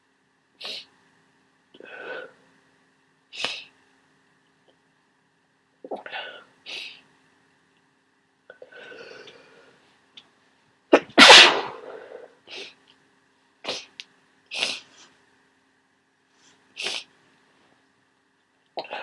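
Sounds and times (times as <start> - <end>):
person sneezing: 0.6 - 0.9, 3.4 - 3.7, 10.9 - 12.8, 13.6 - 15.0, 16.8 - 17.1.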